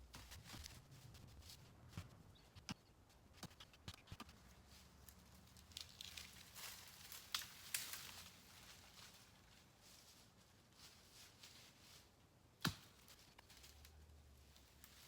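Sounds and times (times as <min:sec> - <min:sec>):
dry leaves crackling and rustling: 0:04.7 - 0:12.1
crunching leaves: 0:04.8 - 0:10.1
twigs snapping: 0:05.6 - 0:08.3.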